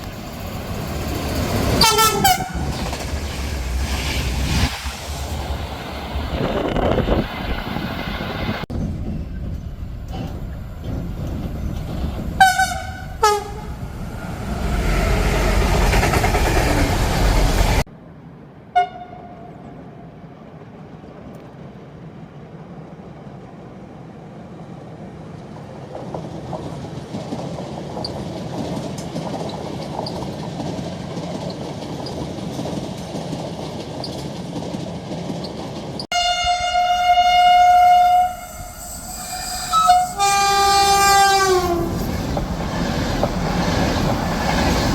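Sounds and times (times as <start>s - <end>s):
rumble of passing train: 0.0s - 44.9s
train approaching on rails: 0.0s - 44.9s
train horn blasts: 1.8s - 2.8s, 12.4s - 13.8s, 18.8s - 19.5s, 36.1s - 42.1s.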